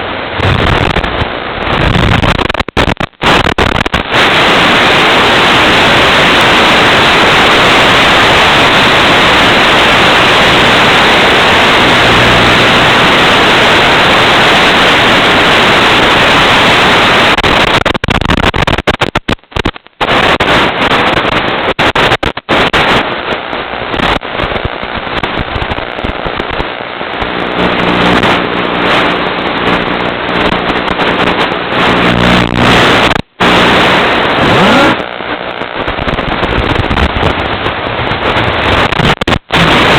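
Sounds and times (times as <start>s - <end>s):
loud static hiss: 0.0s - 39.9s
static crackling: 0.0s - 39.9s
low hum: 8.4s - 16.3s, 27.2s - 38.9s.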